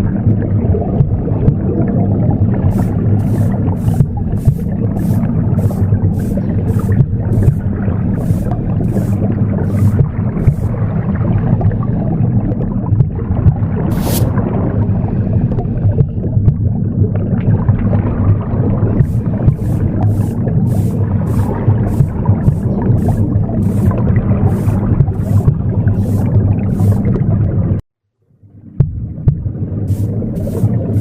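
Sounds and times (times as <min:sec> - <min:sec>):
low whooshing womb sound: 0:00.0 - 0:27.8
broom sweeping: 0:02.7 - 0:10.8, 0:13.9 - 0:14.4, 0:19.0 - 0:27.2, 0:29.9 - 0:31.0.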